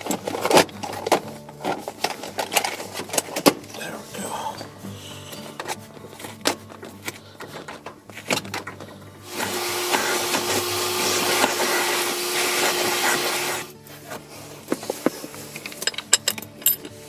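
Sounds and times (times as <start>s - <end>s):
handling clicks and knocks: 0.0s - 3.8s, 5.4s - 11.8s, 13.9s - 17.0s
small electric motor humming: 9.2s - 13.7s.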